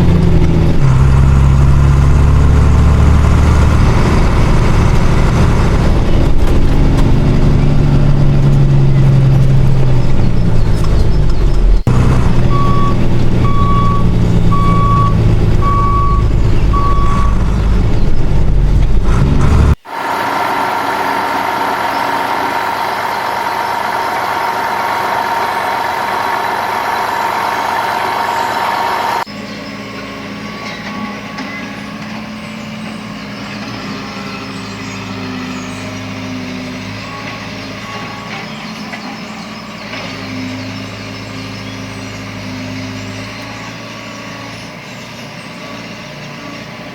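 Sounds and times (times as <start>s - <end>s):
truck engine running: 0.0s - 46.9s
reversing beeper: 11.6s - 17.6s, 19.9s - 29.3s.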